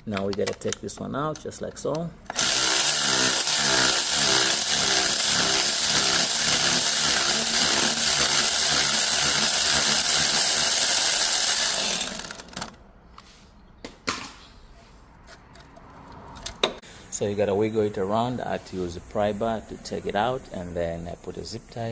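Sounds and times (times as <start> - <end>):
impact wrench running: 2.3 - 12.8.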